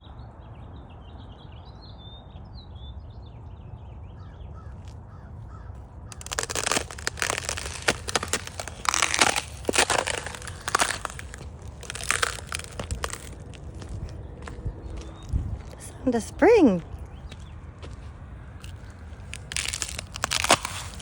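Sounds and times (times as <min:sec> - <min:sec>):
birds calling faintly: 0:04.1 - 0:21.0
footsteps crunching on ice: 0:06.1 - 0:21.0.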